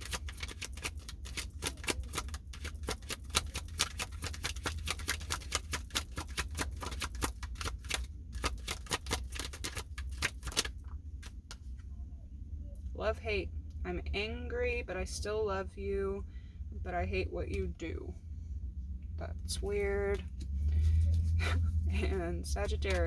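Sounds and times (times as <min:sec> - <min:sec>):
cards being shuffled: 0:00.0 - 0:11.8, 0:20.1 - 0:23.0.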